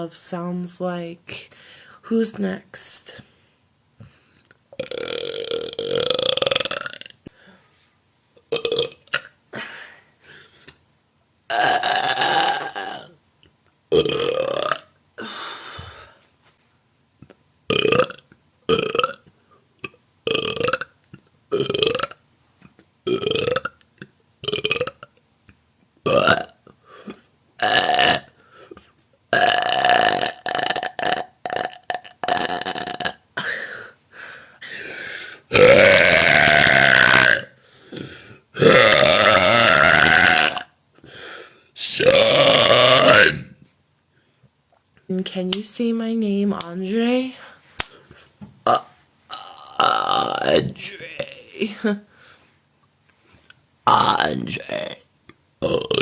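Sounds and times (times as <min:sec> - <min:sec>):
woman belching: 0:04.8 - 0:07.2, 0:08.5 - 0:09.3, 0:11.5 - 0:13.2, 0:13.9 - 0:14.9, 0:17.7 - 0:19.2, 0:20.3 - 0:22.2, 0:23.1 - 0:23.8, 0:24.4 - 0:25.1, 0:26.1 - 0:26.6, 0:27.6 - 0:28.3, 0:29.3 - 0:33.2, 0:35.5 - 0:37.5, 0:38.6 - 0:40.7, 0:42.0 - 0:43.6, 0:48.7 - 0:52.0, 0:53.9 - 0:55.0, 0:55.6 - 0:56.0.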